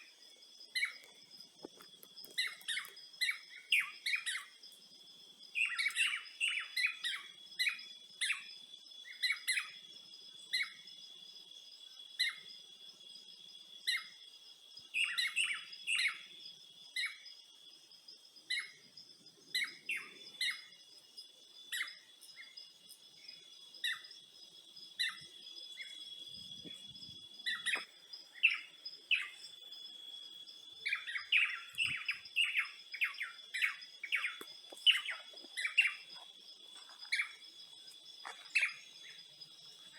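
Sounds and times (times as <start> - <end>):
birds chirping: 25.0 - 29.6, 30.8 - 39.9.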